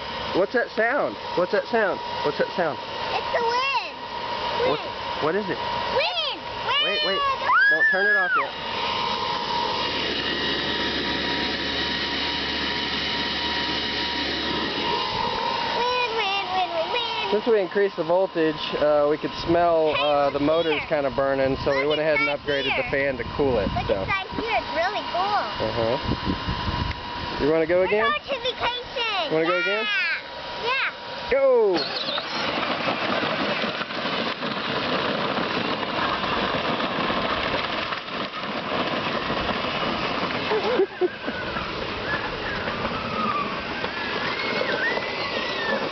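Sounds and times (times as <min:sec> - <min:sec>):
cooling fans whirring: 0:00.0 - 0:45.9.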